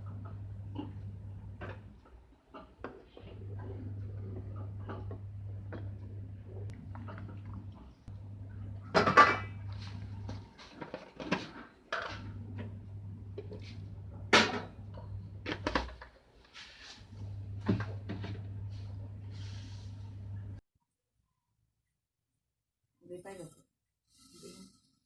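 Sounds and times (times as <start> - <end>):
low steady hum: 0.0 - 16.0, 16.9 - 20.6.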